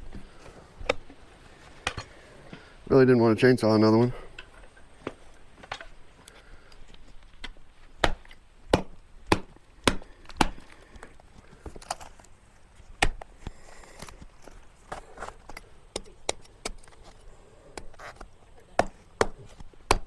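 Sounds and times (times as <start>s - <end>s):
splitting maul striking log: 7.4s - 10.6s, 13.0s - 13.2s, 18.8s - 20.0s.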